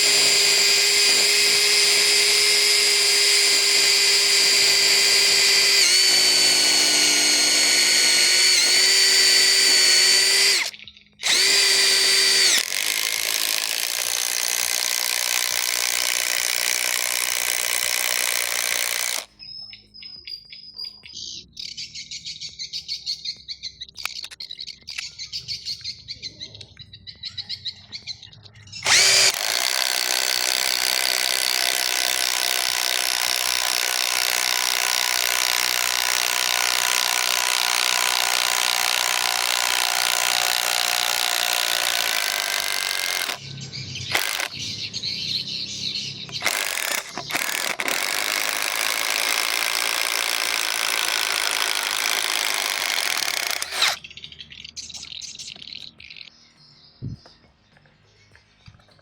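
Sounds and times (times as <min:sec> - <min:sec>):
impact driver hammering: 0:00.0 - 0:19.3, 0:28.8 - 0:43.4, 0:44.1 - 0:44.6, 0:46.3 - 0:54.0
impact driver whining: 0:00.0 - 0:19.3, 0:28.8 - 0:43.4, 0:44.0 - 0:45.1, 0:46.1 - 0:54.0.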